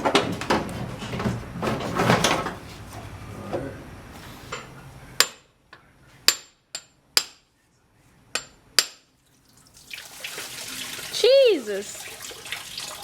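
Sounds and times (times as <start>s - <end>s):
hammer striking metal: 5.2s - 5.5s, 6.3s - 7.4s, 8.4s - 9.1s.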